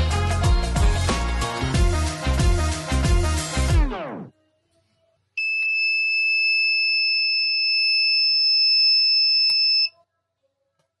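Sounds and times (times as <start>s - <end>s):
high-pitched alarm buzzer tone: 5.4s - 9.9s.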